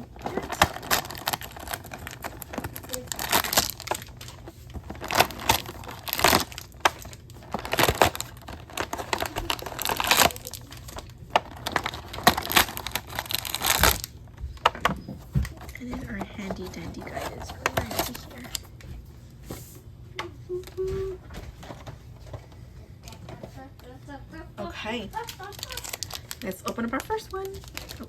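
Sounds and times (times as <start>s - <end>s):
plastic packaging crinkling: 0.0s - 19.0s, 24.9s - 28.0s.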